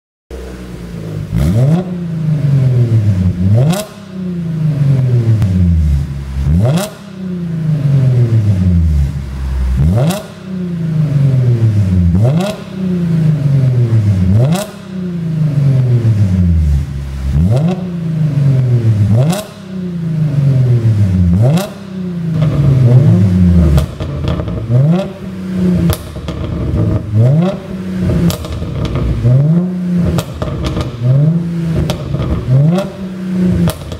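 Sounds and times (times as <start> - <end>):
car engine revving: 0.3 - 33.9
exhaust pops and crackles: 21.6 - 33.9.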